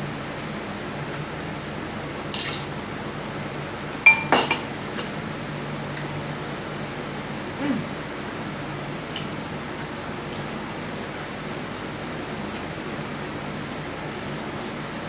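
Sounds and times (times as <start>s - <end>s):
clink against a dish: 4.1s - 4.7s.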